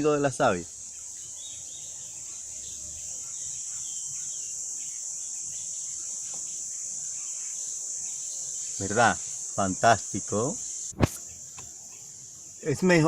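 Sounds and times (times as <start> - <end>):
faint bird chirps: 0.0 - 12.8
crickets chirping: 0.0 - 13.0.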